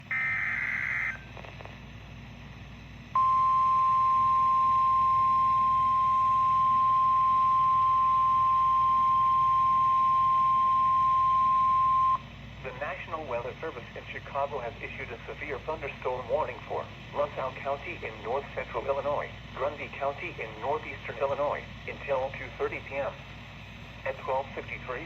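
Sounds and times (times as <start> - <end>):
single-pitch warning alarm tone: 0.0 - 1.2, 3.2 - 12.2
buzzing data tones: 0.0 - 1.6
faint radio hiss: 0.0 - 25.0.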